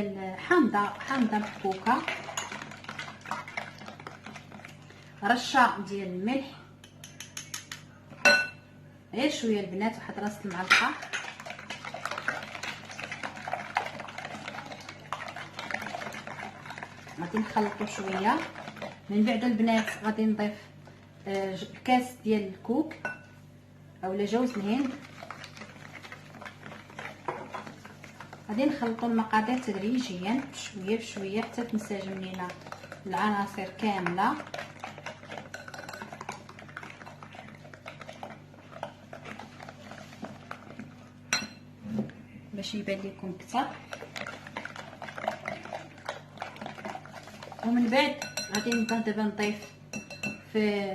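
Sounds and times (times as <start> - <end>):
utensil stirring batter in bowl: 0.0 - 5.8, 9.9 - 22.1, 24.0 - 42.0, 42.7 - 50.4
spoon scraping a bowl: 34.0 - 41.6, 43.7 - 49.0.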